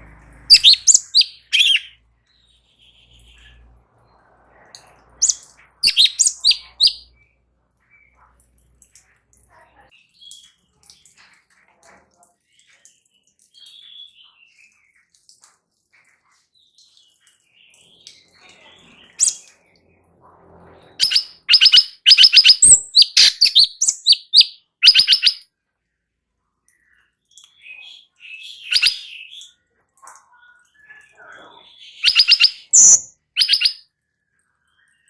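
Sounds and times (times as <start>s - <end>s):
bird singing rapid sharp chirps: 0.0s - 7.3s, 17.7s - 19.6s, 20.9s - 25.4s, 27.5s - 29.5s, 30.9s - 33.8s.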